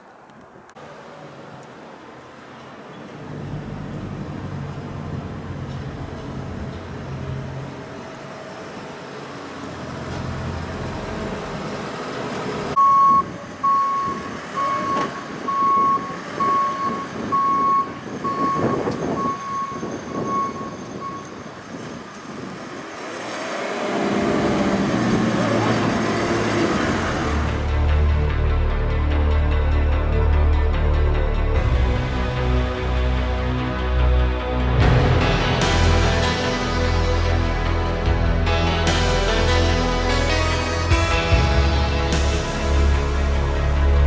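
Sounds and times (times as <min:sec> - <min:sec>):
engine noise: 0:00.0 - 0:12.8, 0:21.8 - 0:44.0
machine warning alarm beeping: 0:12.8 - 0:21.6
rushing noise: 0:21.8 - 0:44.0.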